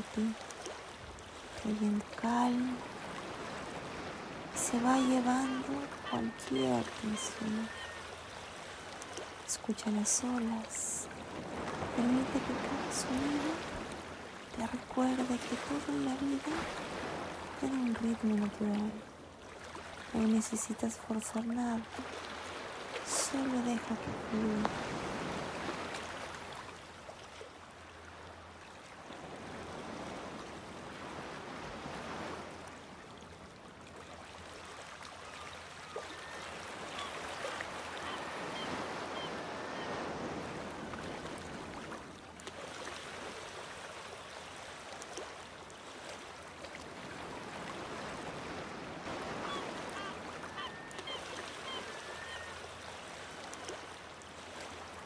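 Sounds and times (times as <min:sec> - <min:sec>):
short high bird calls: 0:05.4 - 0:08.1, 0:49.4 - 0:52.6.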